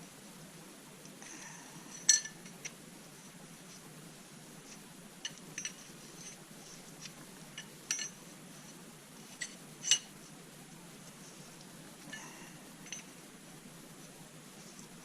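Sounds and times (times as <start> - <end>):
faint steady hum: 0.0 - 15.0
small metal objects clinking: 7.6 - 8.2.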